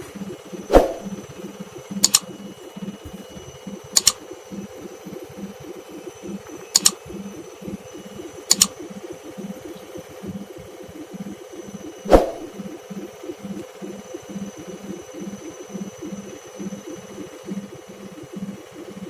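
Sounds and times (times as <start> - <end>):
washing machine spinning: 0.0 - 19.0
sharp double clicks: 0.6 - 3.0, 3.6 - 19.0.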